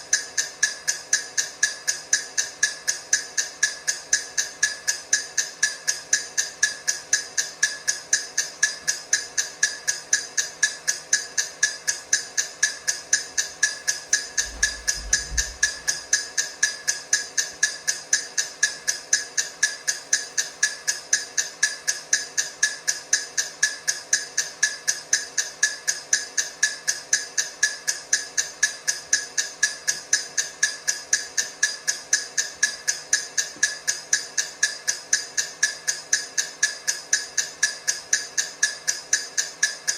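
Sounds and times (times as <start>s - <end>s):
low thud: 14.1s - 16.1s.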